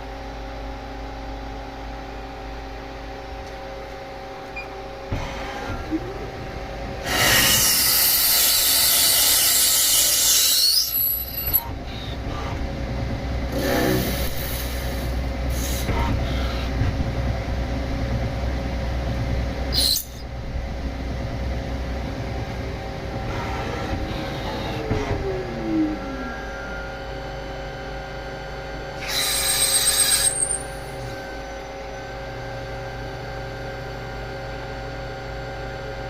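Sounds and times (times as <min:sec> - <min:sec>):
machine humming: 0:02.2 - 0:36.0
lathe cutting squeal: 0:07.0 - 0:12.2, 0:19.7 - 0:20.2, 0:29.0 - 0:31.2.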